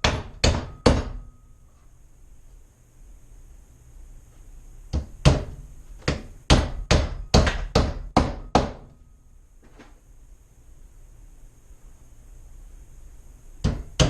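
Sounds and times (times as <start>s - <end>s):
hammer hitting nail into wood: 0.0s - 1.2s, 4.9s - 8.9s, 13.6s - 14.0s.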